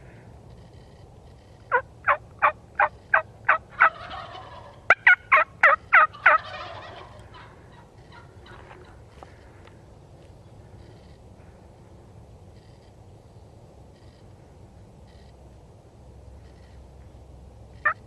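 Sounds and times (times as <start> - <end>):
wild turkey yelping: 1.7 - 9.0.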